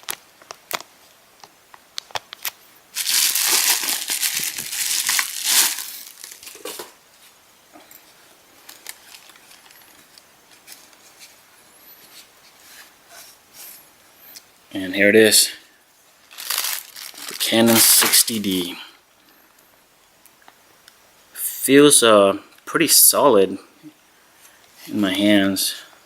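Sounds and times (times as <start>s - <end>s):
packaging crinkling: 2.0s - 7.0s, 8.6s - 11.4s, 16.2s - 18.5s.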